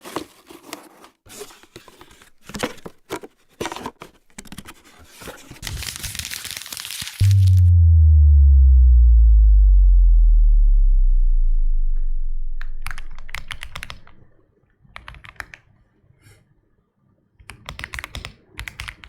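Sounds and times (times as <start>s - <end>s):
packaging crinkling and tearing: 3.7s - 7.3s
deep electronic bass drop: 7.2s - 13.3s.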